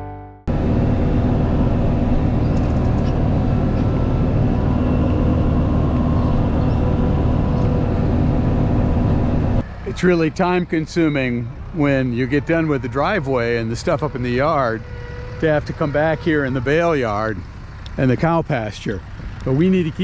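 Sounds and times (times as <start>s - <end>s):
farm machine engine running: 0.0s - 20.0s.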